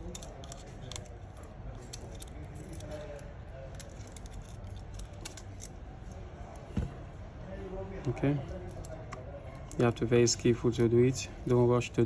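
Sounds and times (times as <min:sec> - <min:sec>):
small parts and tools clicking: 0:00.0 - 0:06.7.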